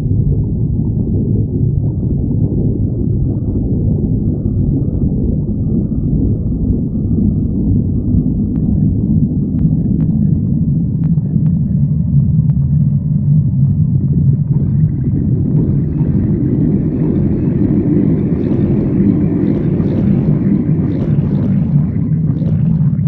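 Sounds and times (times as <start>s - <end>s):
stomach growling: 0.0s - 23.0s.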